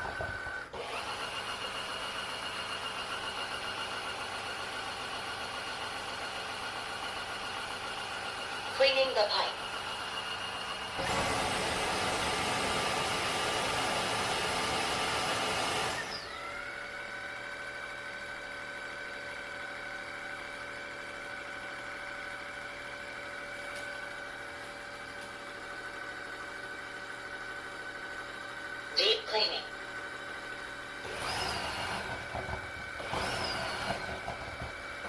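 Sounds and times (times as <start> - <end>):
floor cleaner suction and motor: 0.0 - 8.8, 9.6 - 28.9, 29.9 - 35.0.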